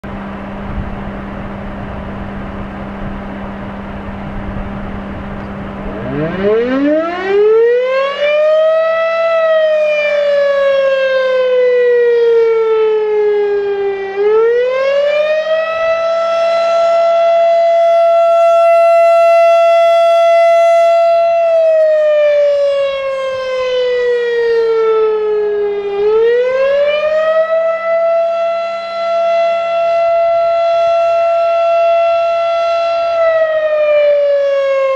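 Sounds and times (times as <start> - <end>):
wind noise on microphone: 0.0 - 7.1, 15.6 - 27.5
warning siren wailing: 0.1 - 34.9.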